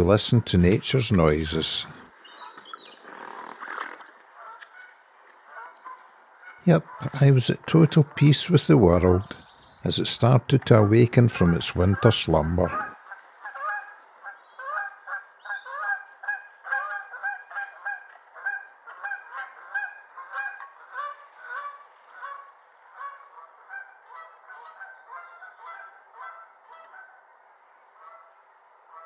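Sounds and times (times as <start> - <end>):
geese honking: 0.0 - 2.0, 6.7 - 12.9.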